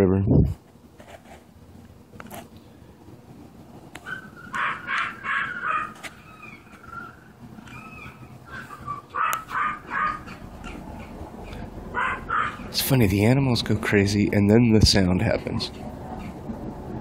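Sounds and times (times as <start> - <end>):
animals calling: 4.0 - 12.8.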